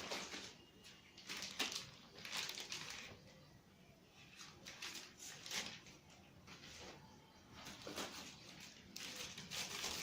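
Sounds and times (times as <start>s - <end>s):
packaging rustling: 0.0s - 3.4s, 4.4s - 6.7s, 7.6s - 10.0s.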